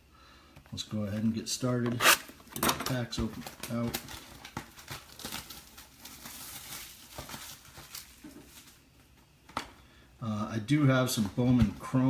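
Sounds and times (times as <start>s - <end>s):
plastic wrapping crinkling and tearing: 2.9s - 9.0s.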